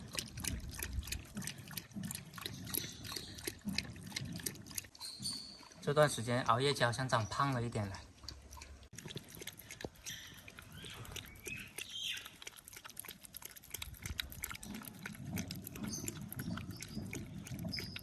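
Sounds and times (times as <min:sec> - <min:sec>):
dog lapping and slurping food: 0:00.0 - 0:18.0.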